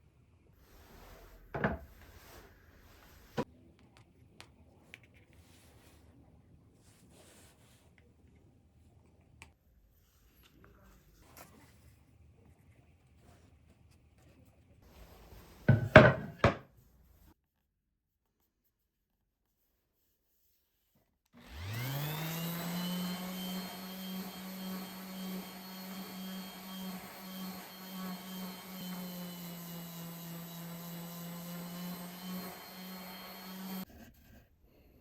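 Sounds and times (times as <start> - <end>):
wooden boards knocking: 15.7 - 16.6
table saw motor humming: 21.4 - 33.8.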